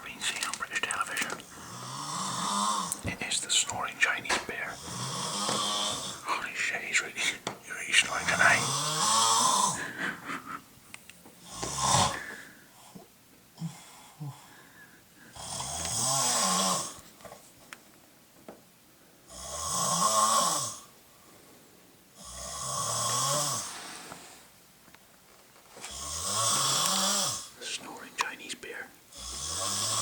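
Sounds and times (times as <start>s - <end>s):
quiet breathing: 0.0s - 15.8s, 20.9s - 24.6s, 25.7s - 30.0s
man snoring loudly: 1.6s - 3.0s, 4.7s - 6.2s, 8.2s - 9.8s, 11.4s - 12.3s, 15.3s - 17.0s, 19.3s - 20.9s, 22.2s - 23.8s, 25.9s - 27.5s, 29.1s - 30.0s.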